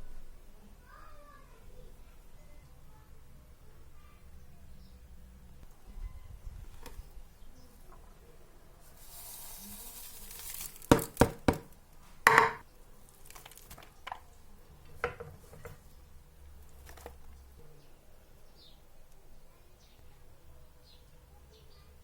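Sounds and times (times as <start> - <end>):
brief hiss: 9.0 - 10.8.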